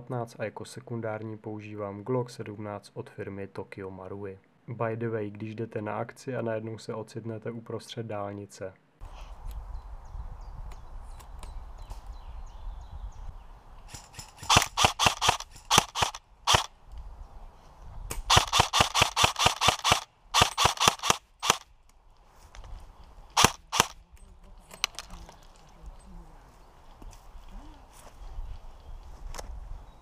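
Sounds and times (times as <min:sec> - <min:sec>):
airsoft guns firing: 0:13.9 - 0:16.7, 0:18.2 - 0:21.6, 0:23.4 - 0:24.0.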